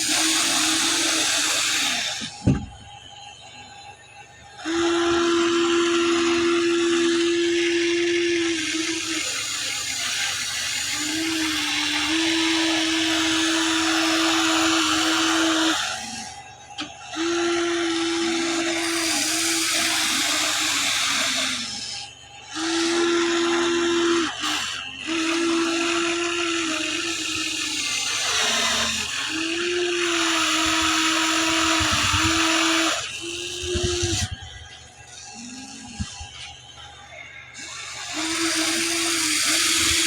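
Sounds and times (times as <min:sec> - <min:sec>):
electric motors whining: 0:00.0 - 0:40.0.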